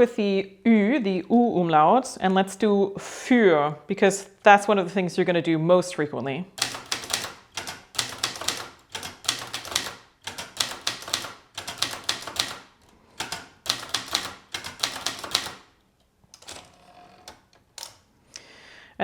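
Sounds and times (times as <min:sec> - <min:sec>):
typewriter keys striking: 0:06.6 - 0:15.8, 0:16.4 - 0:18.0.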